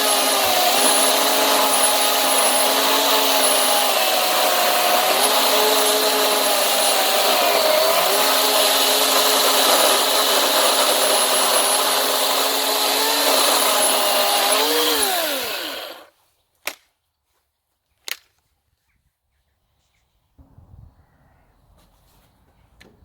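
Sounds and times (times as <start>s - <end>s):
chainsaw cutting a log: 0.0s - 16.1s.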